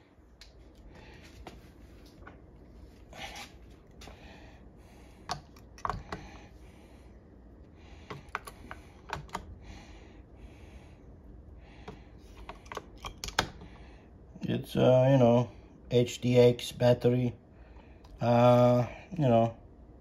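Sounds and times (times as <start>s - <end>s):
small clicks and taps of parts: 5.2s - 6.3s, 8.1s - 9.5s, 11.8s - 13.8s.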